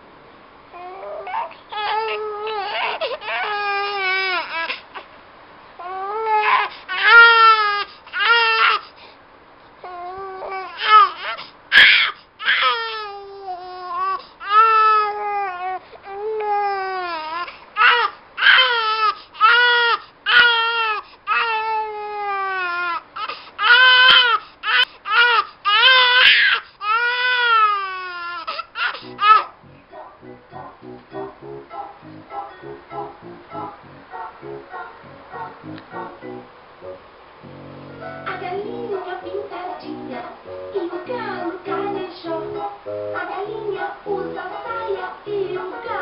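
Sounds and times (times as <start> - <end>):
baby crying: 0.8 - 4.8, 5.8 - 8.8, 9.9 - 29.8.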